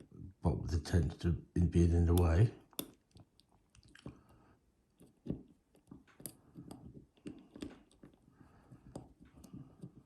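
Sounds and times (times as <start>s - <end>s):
lock pick clicking and scraping: 5.8s - 8.2s.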